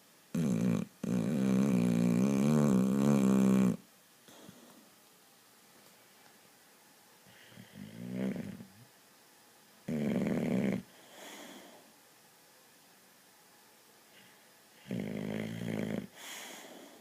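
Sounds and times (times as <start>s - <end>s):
dog snoring: 0.3s - 4.8s, 7.3s - 8.9s, 9.9s - 11.8s, 14.8s - 17.0s
dog breathing softly: 10.8s - 11.9s, 16.1s - 17.0s.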